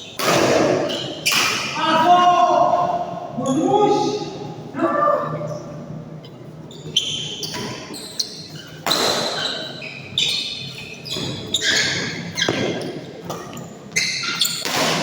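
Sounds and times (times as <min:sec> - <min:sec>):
rackets hitting shuttlecock: 0:14.5 - 0:15.0.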